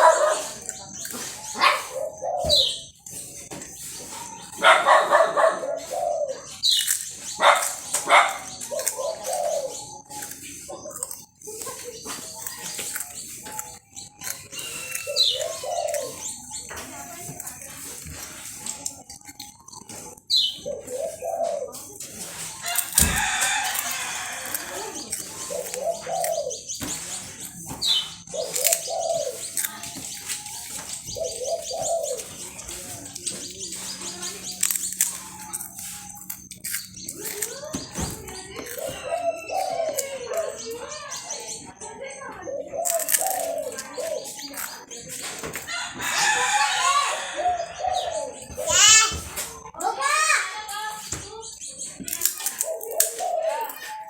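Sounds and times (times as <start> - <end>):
dog barking: 0.0 - 0.6, 1.6 - 2.1, 4.6 - 5.9, 7.4 - 8.5
dove cooing: 0.0 - 3.0, 4.2 - 12.0, 13.4 - 16.8, 19.2 - 36.0, 38.4 - 41.1, 41.8 - 49.3, 52.6 - 54.0
birds chirping: 0.0 - 54.0.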